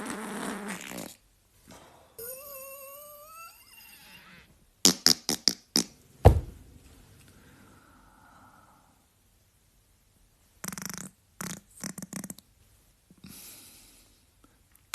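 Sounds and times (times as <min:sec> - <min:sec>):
squeaky fart sound effect: 0:00.0 - 0:01.2, 0:02.2 - 0:05.9, 0:10.6 - 0:12.4
sharp fart pops: 0:04.8 - 0:06.5
heavy low thud: 0:06.2 - 0:06.8.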